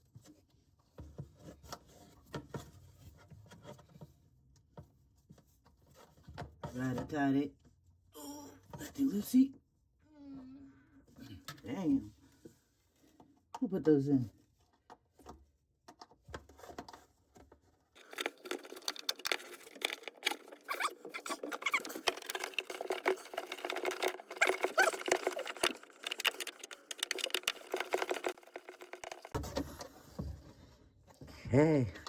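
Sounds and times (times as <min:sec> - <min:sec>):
rusty screw squeaking and grinding: 0:18.0 - 0:29.4.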